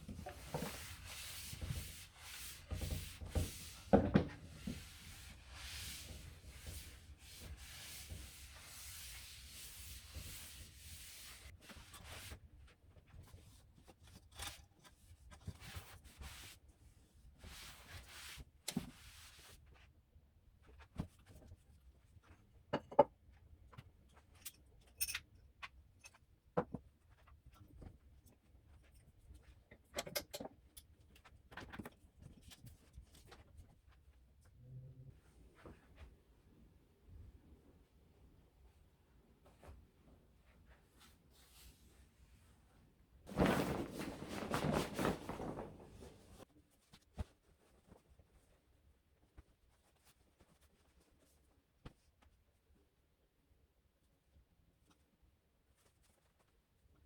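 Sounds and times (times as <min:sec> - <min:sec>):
surface scrubbed by hand: 0:00.2 - 0:11.5.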